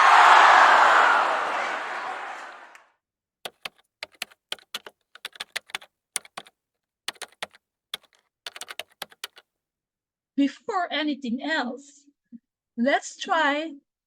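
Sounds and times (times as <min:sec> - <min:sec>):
quick clicks in clusters: 0:03.5 - 0:09.5.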